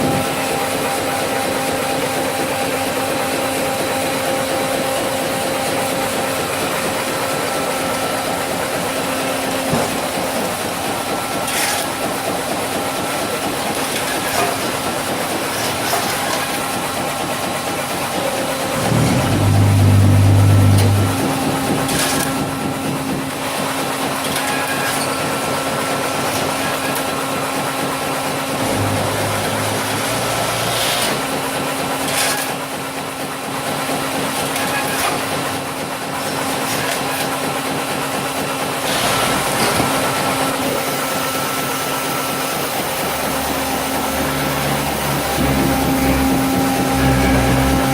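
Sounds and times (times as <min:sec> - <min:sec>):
hydraulic machine hum: 0:00.0 - 0:32.8, 0:38.4 - 0:47.9
loud low hum: 0:18.3 - 0:23.4, 0:28.6 - 0:30.8, 0:43.1 - 0:47.9.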